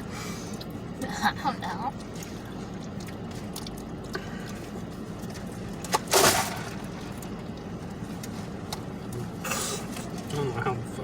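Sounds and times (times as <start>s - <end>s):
liquid splashing: 5.9s - 7.3s.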